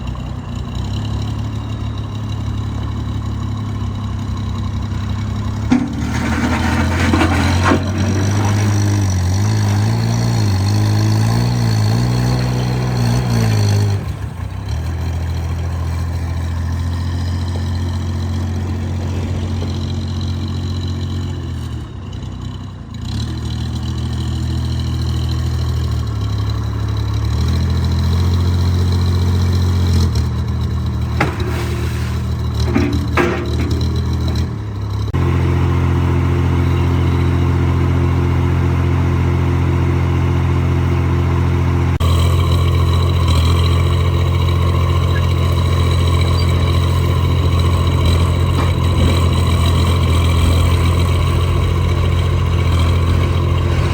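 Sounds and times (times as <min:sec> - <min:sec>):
backhoe loader engine running: 0:00.0 - 0:53.9
sharp metal clanks: 0:05.7 - 0:09.3, 0:31.1 - 0:34.7.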